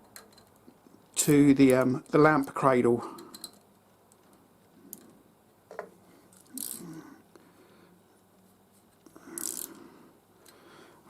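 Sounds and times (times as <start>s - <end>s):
small metal parts clicking: 0.0s - 0.7s, 1.7s - 5.1s, 5.7s - 7.0s, 9.2s - 9.8s.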